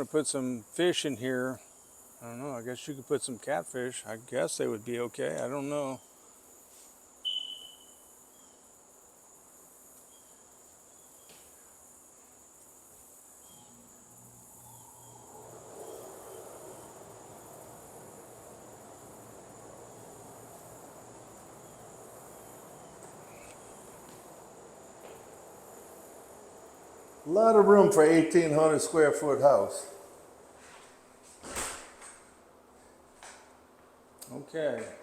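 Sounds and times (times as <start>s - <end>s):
crickets chirping: 0.0s - 35.0s
short high chirp: 7.2s - 8.0s
soft rushing noise: 14.6s - 31.0s.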